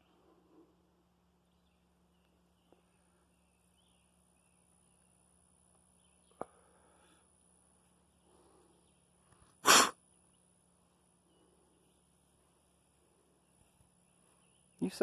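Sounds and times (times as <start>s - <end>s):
person sneezing: 9.6s - 10.0s.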